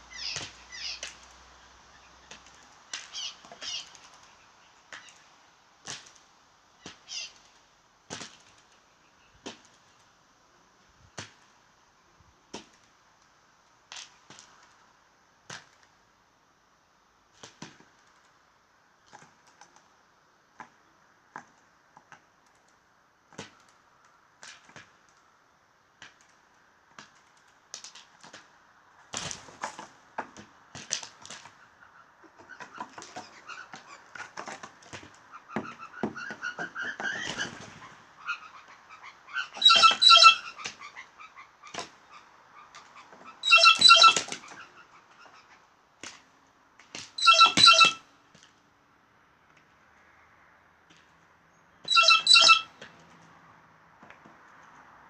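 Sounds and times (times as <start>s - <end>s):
faint pitched bird sounds: 0.0s - 1.0s, 3.0s - 5.2s, 38.2s - 45.6s, 47.2s - 48.0s, 51.5s - 52.7s.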